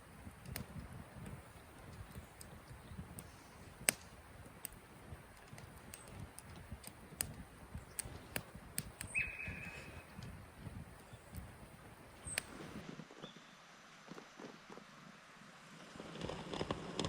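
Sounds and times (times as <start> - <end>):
sharp clicks and crackles: 0.3 - 12.8
steady high call: 9.0 - 10.2.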